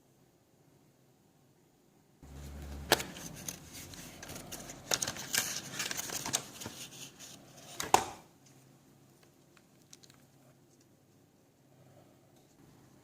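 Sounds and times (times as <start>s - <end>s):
capsules rustling: 2.2s - 11.3s.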